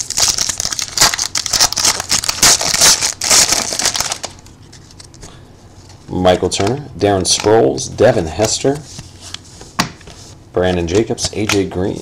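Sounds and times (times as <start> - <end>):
foil wrapper crinkling and tearing: 0.0 - 4.4.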